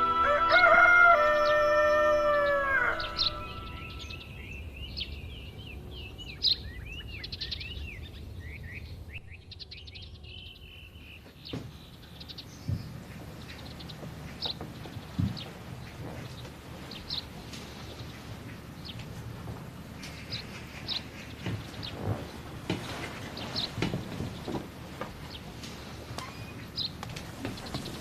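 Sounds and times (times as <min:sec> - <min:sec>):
songbirds chirping: 0:00.0 - 0:28.0
dull thuds: 0:12.6 - 0:17.8.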